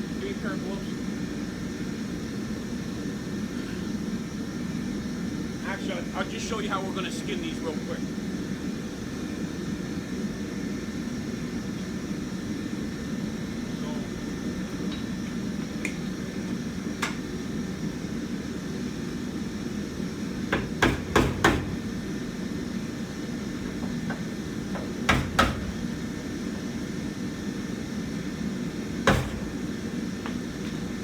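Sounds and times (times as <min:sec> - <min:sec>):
steady hum: 0:00.0 - 0:31.0
hammer knocking on metal: 0:20.5 - 0:22.1, 0:23.7 - 0:26.1, 0:29.0 - 0:30.8.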